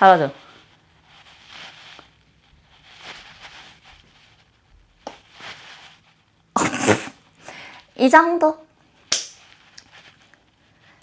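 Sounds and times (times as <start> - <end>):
person breathing hard: 6.6 - 7.8.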